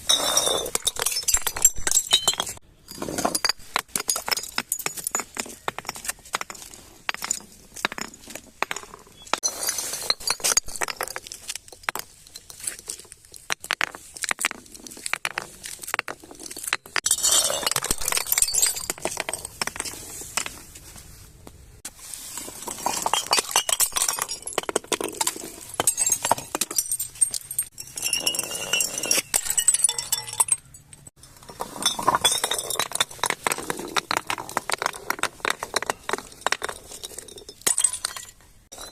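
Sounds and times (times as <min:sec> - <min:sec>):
glass bottles breaking: 0:00.0 - 0:12.9, 0:16.6 - 0:19.7, 0:22.8 - 0:31.0, 0:31.6 - 0:38.9
glass shards crunching and tinkling: 0:00.1 - 0:06.5, 0:16.6 - 0:19.6, 0:22.7 - 0:33.3.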